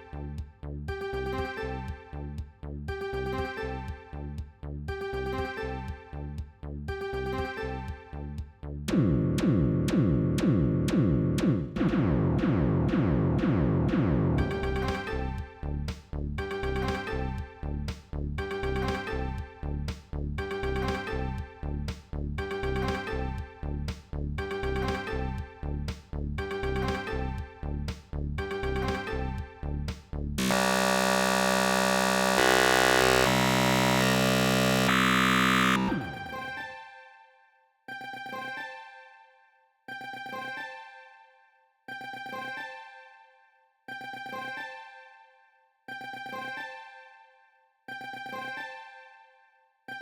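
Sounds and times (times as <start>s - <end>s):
synthesized ringtone melody: 8.9s - 15.3s
dark midi ringtone music: 8.9s - 15.6s, 30.4s - 36.6s.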